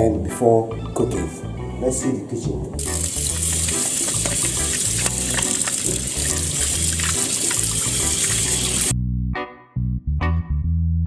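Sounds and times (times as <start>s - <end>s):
background music with bass line: 0.0s - 11.0s
tap running water: 2.8s - 8.9s.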